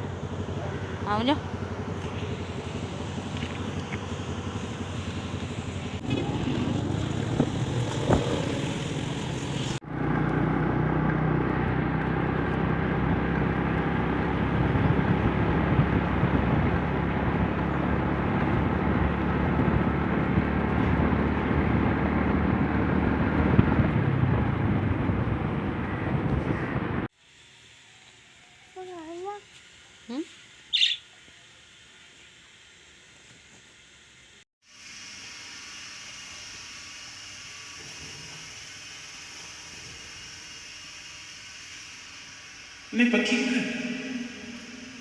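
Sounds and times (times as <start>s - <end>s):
motorcycle engine: 0.0s - 27.1s, 43.0s - 45.0s
road noise: 0.0s - 27.1s, 42.9s - 45.0s.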